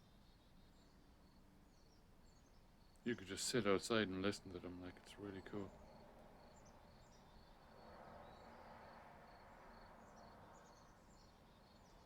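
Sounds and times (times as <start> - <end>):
low background hiss: 0.0 - 6.8.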